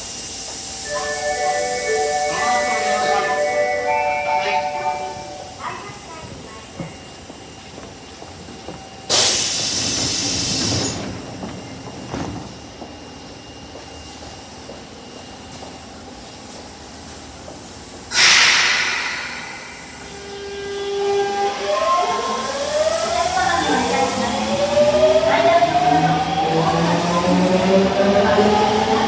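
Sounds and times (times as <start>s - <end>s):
hissy train horn blasts: 0.8s - 6.0s, 18.1s - 22.2s.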